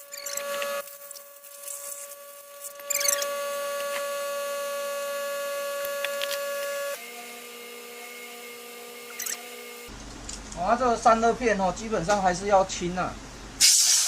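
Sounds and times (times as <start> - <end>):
power tool motor whining: 0.0 - 0.8, 2.1 - 9.9.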